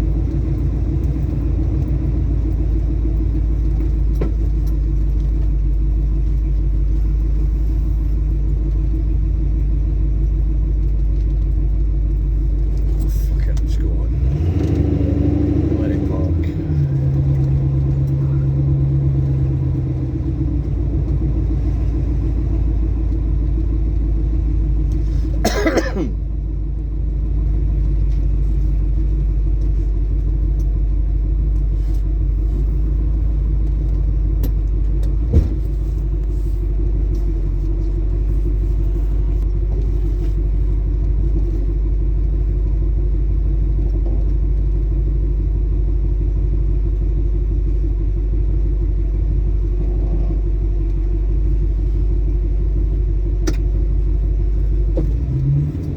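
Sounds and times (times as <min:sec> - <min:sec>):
car engine and road rumble: 0:00.0 - 0:55.9.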